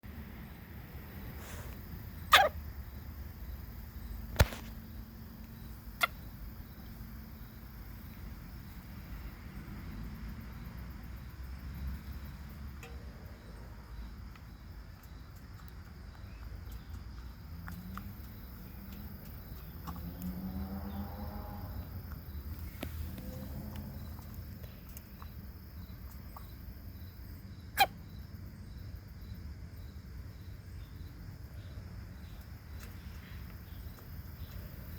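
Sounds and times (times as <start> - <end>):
chicken sneezing: 1.4 - 2.6.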